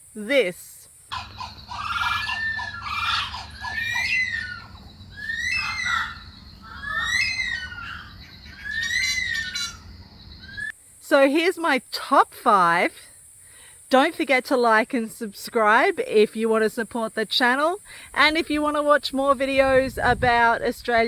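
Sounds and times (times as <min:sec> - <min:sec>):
steady low hum: 0:00.9 - 0:11.0
bird harsh calls: 0:01.1 - 0:10.8.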